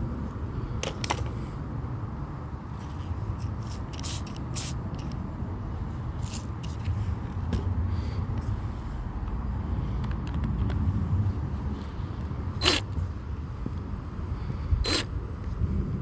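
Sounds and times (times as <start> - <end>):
steady low rumble: 0.0 - 16.0
tire plug tool scraping: 11.7 - 13.9, 14.7 - 15.6.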